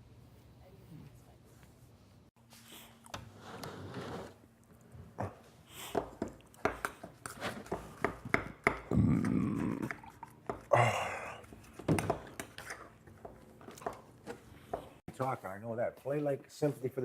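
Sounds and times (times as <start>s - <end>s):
man burping: 8.9s - 10.1s.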